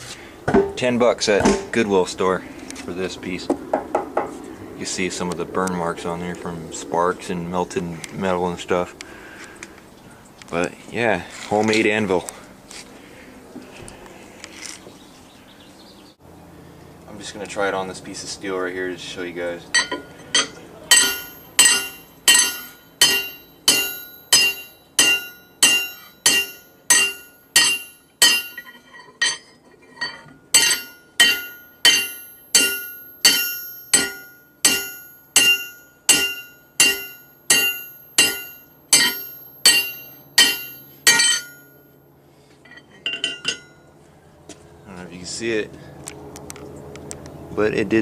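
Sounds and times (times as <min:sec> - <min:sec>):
hammer ringing on steel: 0:19.7 - 0:42.0, 0:43.1 - 0:43.9.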